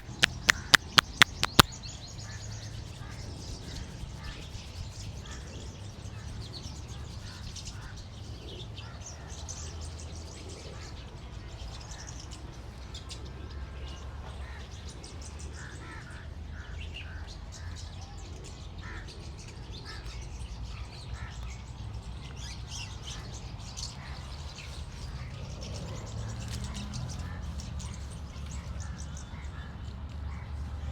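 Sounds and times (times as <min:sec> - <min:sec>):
birds chirping: 0:00.0 - 0:01.7.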